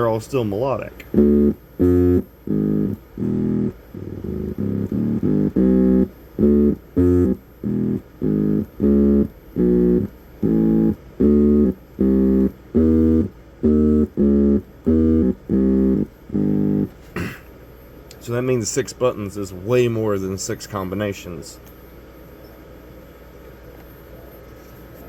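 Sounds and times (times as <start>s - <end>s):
short electronic tones: 1.0s - 17.0s.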